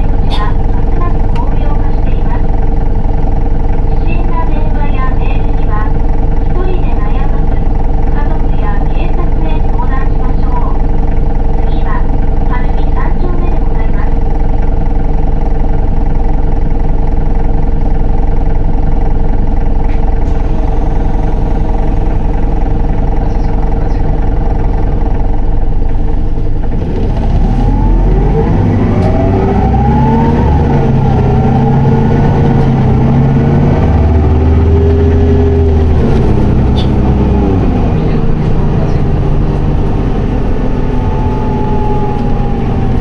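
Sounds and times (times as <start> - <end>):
bus diesel engine running: 0.0 - 43.0
driveline whine: 19.6 - 43.0.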